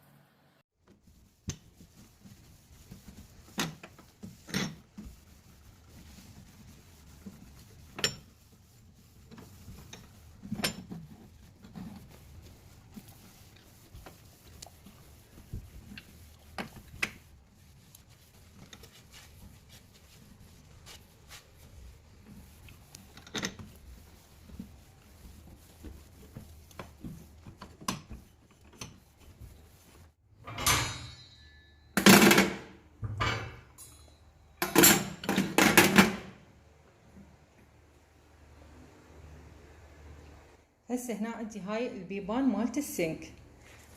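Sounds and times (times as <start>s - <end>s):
scrubbing: 0.9s - 30.2s.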